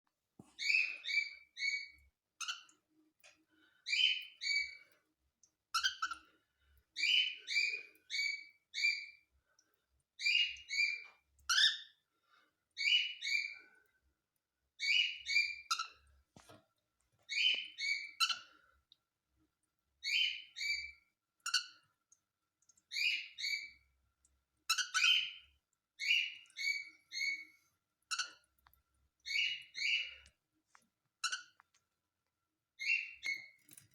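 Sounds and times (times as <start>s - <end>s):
cockatiel chirping: 5.8s - 6.2s, 10.2s - 11.9s, 14.8s - 15.9s, 17.3s - 18.4s, 20.0s - 20.9s, 24.7s - 25.4s, 26.0s - 27.4s, 29.3s - 30.2s, 32.8s - 33.5s.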